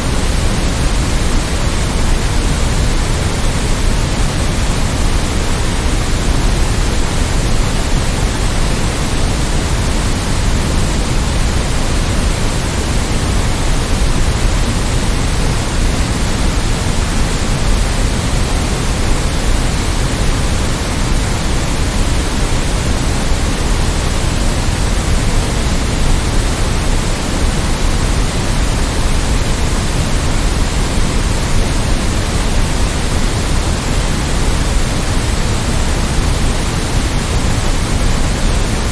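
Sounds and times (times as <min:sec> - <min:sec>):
synthetic white noise hiss: 0:00.0 - 0:38.9.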